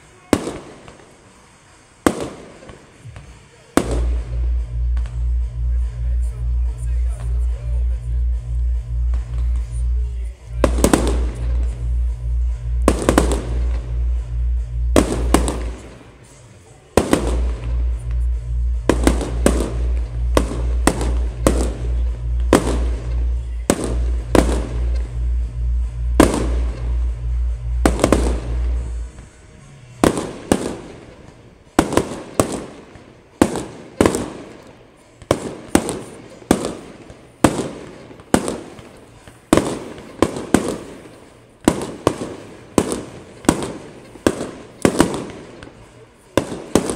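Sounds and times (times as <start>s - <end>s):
fireworks bangs: 0.0s - 46.9s
music with bass beat: 3.8s - 16.0s, 17.0s - 29.3s.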